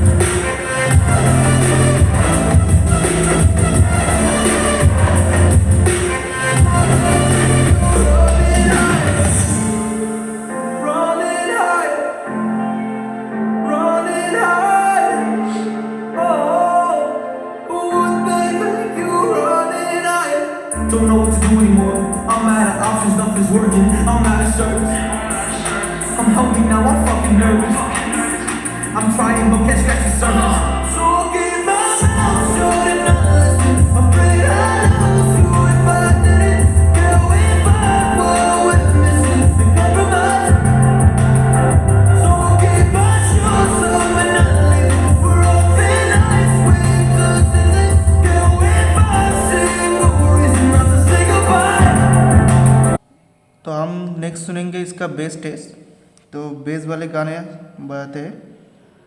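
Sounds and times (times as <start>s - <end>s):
bass-heavy beat: 0.0s - 9.8s, 20.7s - 31.4s, 32.0s - 53.0s
person singing over bass: 0.0s - 9.9s, 13.7s - 53.0s.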